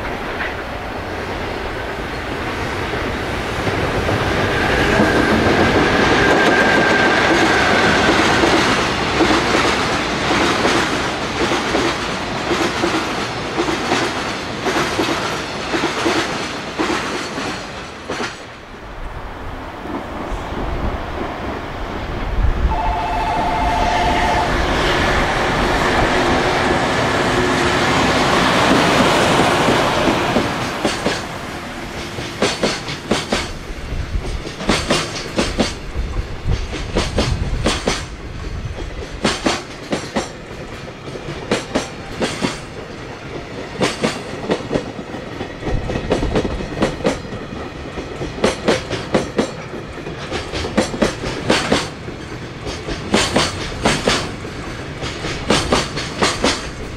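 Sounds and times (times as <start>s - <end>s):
locomotive passing: 0.0s - 56.9s
two-note train horn: 22.6s - 25.3s
wagons clicking over rail joints: 38.8s - 56.9s.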